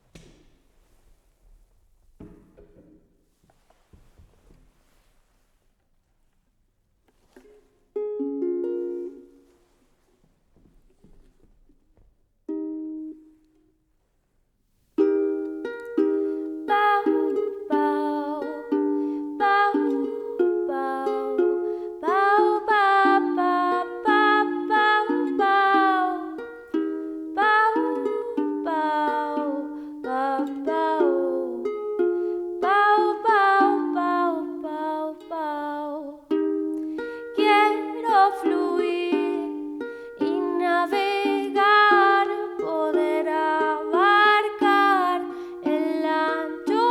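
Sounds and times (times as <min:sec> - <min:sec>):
person singing: 0:16.0 - 0:46.9.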